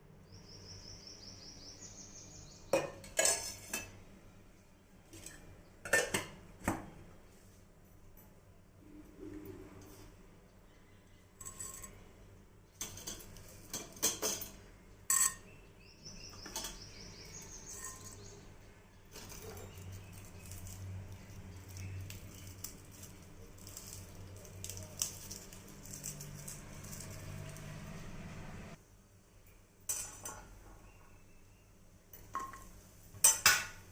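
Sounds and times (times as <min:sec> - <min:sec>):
utensils clinking against pots: 0:02.7 - 0:04.0, 0:05.1 - 0:06.4, 0:11.4 - 0:12.0, 0:12.8 - 0:15.5, 0:16.4 - 0:17.0, 0:17.6 - 0:18.5, 0:19.1 - 0:27.8, 0:29.9 - 0:30.5, 0:32.1 - 0:33.9.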